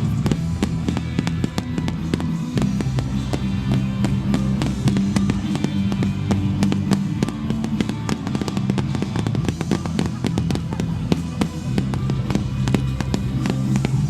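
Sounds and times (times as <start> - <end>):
fireworks bangs and crackles: 0.0 - 14.0
music with low chords: 0.0 - 14.0.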